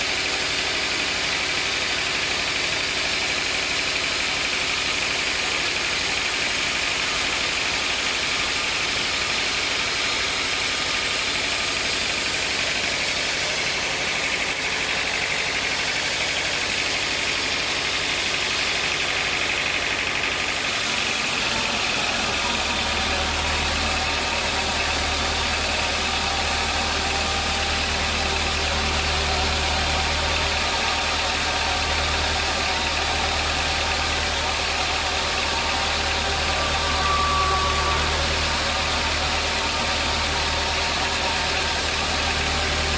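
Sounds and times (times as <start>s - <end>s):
sawmill machinery running: 0.0s - 42.9s
deep low drone: 20.4s - 42.9s.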